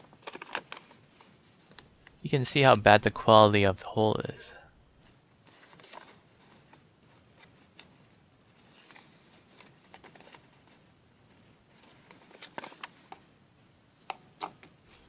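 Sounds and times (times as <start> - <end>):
paper rustling: 0.0 - 1.9, 5.4 - 13.3.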